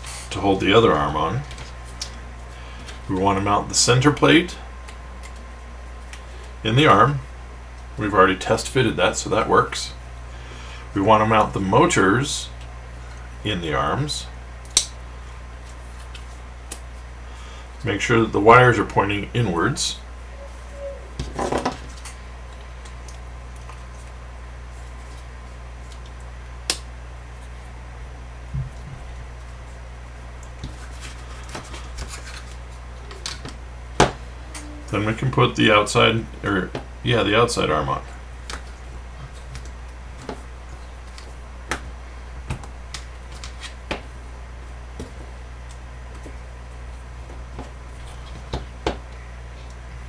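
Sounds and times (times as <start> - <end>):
steady low hum: 0.0 - 50.0
parts rustling: 28.5 - 37.3, 37.9 - 49.9.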